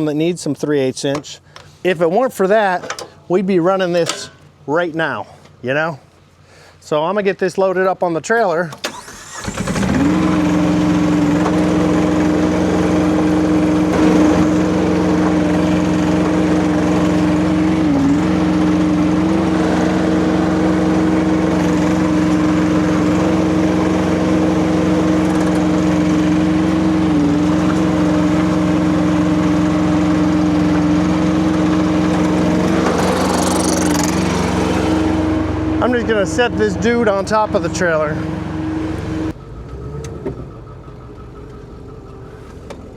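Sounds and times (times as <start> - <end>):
diesel engine running steadily: 8.8 - 42.9.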